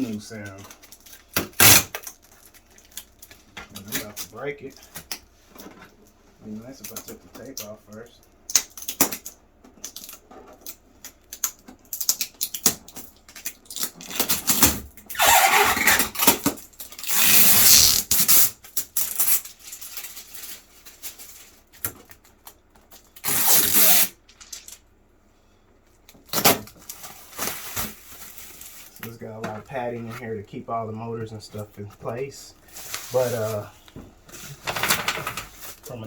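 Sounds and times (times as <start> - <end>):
packing tape peeling: 1.0 - 4.2, 11.3 - 21.3, 23.2 - 24.8, 26.3 - 28.7
rasping tape stretches: 1.4 - 3.1, 11.3 - 19.8, 23.2 - 24.8
plastic wrap handled: 11.8 - 24.9, 26.2 - 30.2, 31.5 - 36.0.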